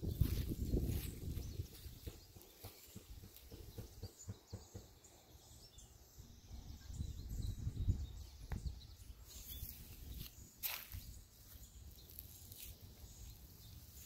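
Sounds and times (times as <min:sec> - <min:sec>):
wind rumbling on microphone: 0:00.0 - 0:03.9, 0:06.4 - 0:10.3
faint bird chirps: 0:00.0 - 0:14.0.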